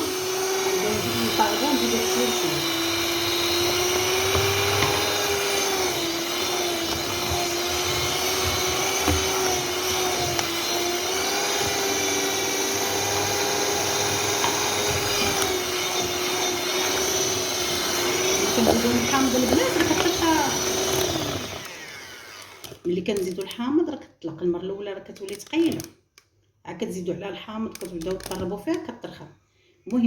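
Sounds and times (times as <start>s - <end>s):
electric mixer beating batter: 0.0s - 22.9s.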